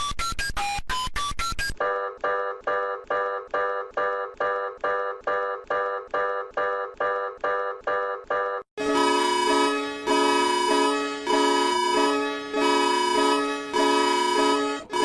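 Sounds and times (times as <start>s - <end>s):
alternating electronic alarm chords: 8.8s - 15.0s
fast pulsing alarm: 8.8s - 15.0s.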